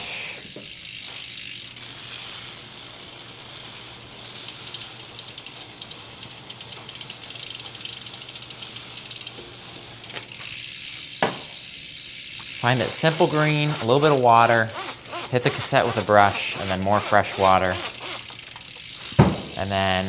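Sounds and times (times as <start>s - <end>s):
freewheel ratchet ticking: 0.0s - 20.0s
brush scrubbing metal: 12.6s - 18.3s.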